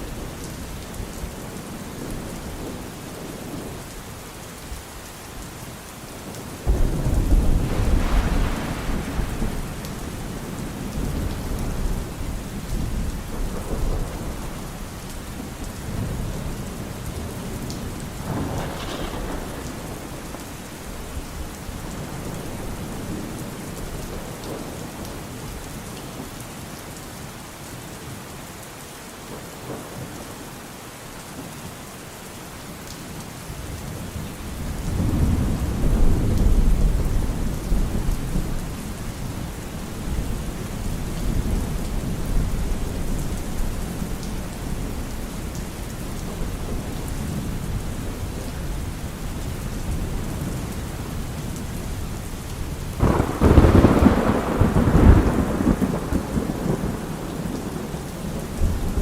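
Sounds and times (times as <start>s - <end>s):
steady rain falling: 0.0s - 59.0s
thunder clap and rumble: 6.6s - 24.9s, 34.6s - 59.0s.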